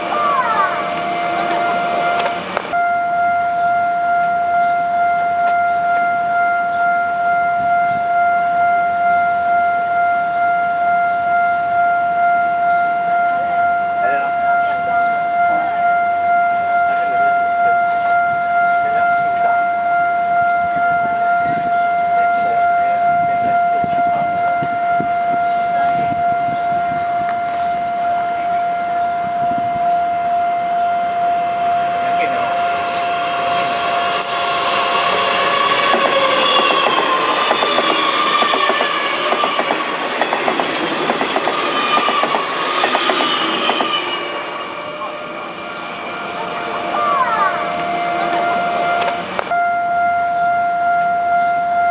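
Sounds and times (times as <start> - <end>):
train rushing: 0.0 - 3.6, 20.7 - 49.5
level crossing alarm tone: 0.0 - 51.9
train wheels knocking on rail joints: 35.7 - 44.0.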